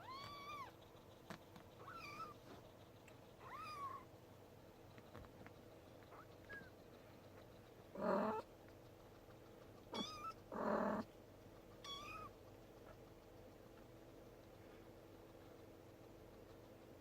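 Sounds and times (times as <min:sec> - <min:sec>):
cat meowing: 0:00.0 - 0:00.7, 0:01.8 - 0:02.4, 0:03.4 - 0:04.0, 0:09.9 - 0:10.4, 0:11.8 - 0:12.3
kitten mewing: 0:01.8 - 0:02.4, 0:09.9 - 0:11.1, 0:11.8 - 0:12.3.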